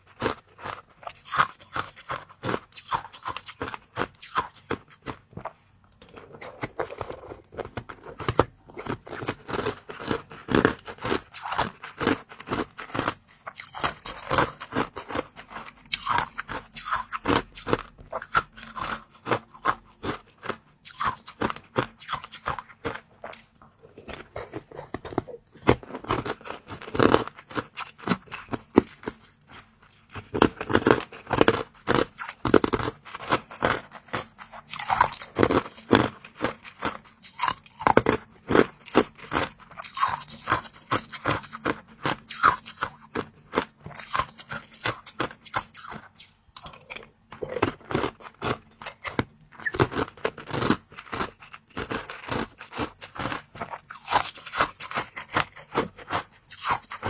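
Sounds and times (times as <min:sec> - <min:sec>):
crunching and chewing food: 0:00.0 - 0:57.0.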